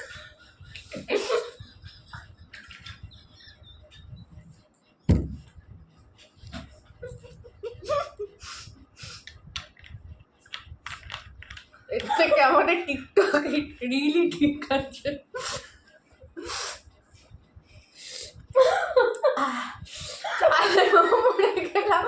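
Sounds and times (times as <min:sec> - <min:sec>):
woman laughing: 0:00.0 - 0:04.1, 0:06.8 - 0:08.7, 0:11.9 - 0:13.8, 0:14.4 - 0:15.7, 0:18.4 - 0:22.0
sharp thump: 0:05.1 - 0:05.4
woman breathing hissing breaths: 0:08.4 - 0:09.3, 0:15.4 - 0:16.8, 0:17.8 - 0:18.4, 0:19.5 - 0:20.3.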